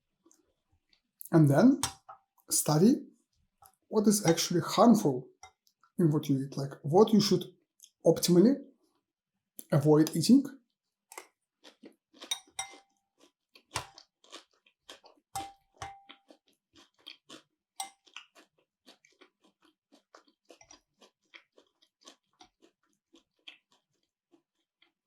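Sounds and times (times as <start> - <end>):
person chewing and biting food: 11.1 - 25.0.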